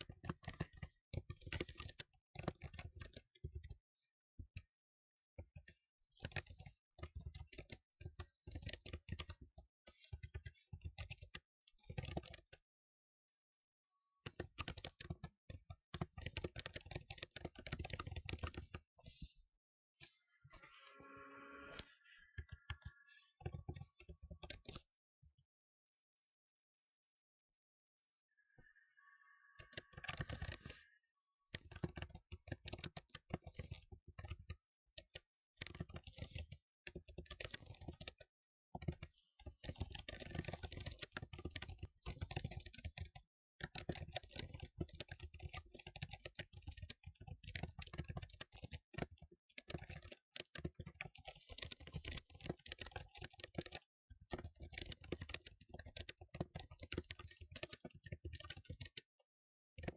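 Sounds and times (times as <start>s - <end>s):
fast keyboard typing: 0.0s - 3.8s, 5.4s - 12.6s, 14.2s - 19.4s, 21.8s - 24.9s, 29.6s - 59.9s.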